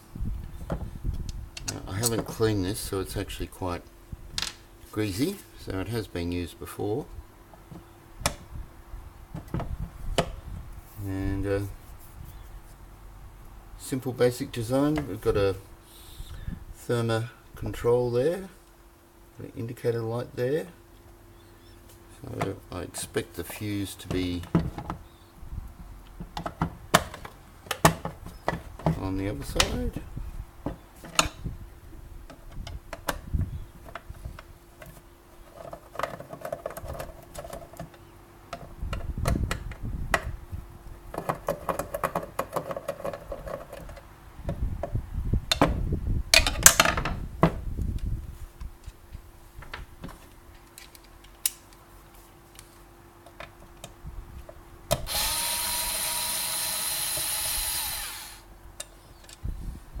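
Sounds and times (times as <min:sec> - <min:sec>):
tools and plastic knocking: 0:41.1 - 0:44.0
power driver running: 0:54.9 - 0:58.5.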